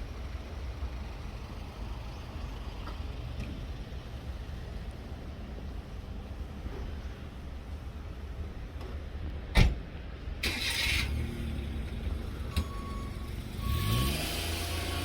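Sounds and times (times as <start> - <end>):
car engine starting and idling: 10.4 - 15.0.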